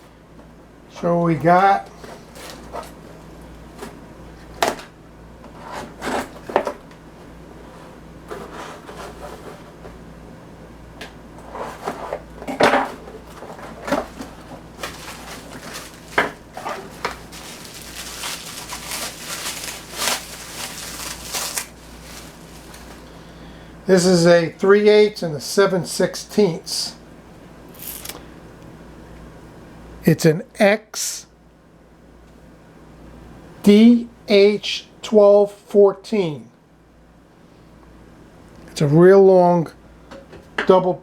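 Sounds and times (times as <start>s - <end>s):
rustling: 13.1s - 23.4s.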